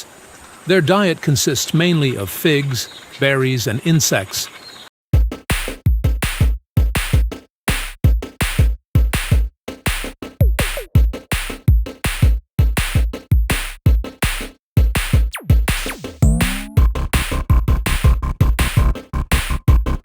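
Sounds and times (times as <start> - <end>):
electronic music with drum-machine beat: 5.2 - 20.0.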